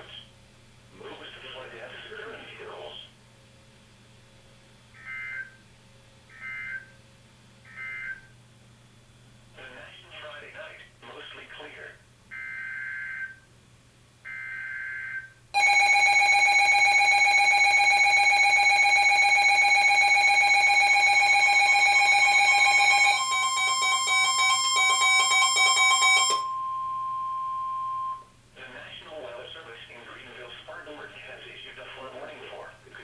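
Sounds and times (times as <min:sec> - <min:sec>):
loud buzzy radio alarm: 0:06.3 - 0:06.9, 0:07.7 - 0:08.4, 0:14.3 - 0:28.3
single-pitch attention tone: 0:21.0 - 0:28.3.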